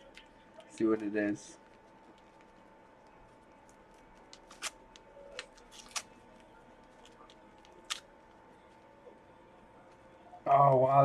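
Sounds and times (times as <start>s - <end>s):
packaging crinkling: 0.0s - 8.1s.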